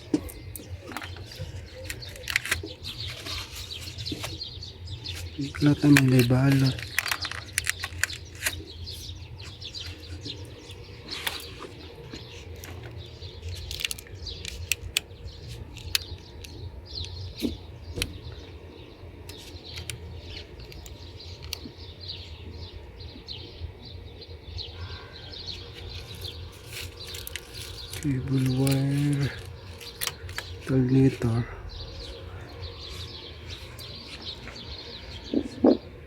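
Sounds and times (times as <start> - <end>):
small birds chirping: 0.0 - 36.0
steady low hum: 0.0 - 36.0.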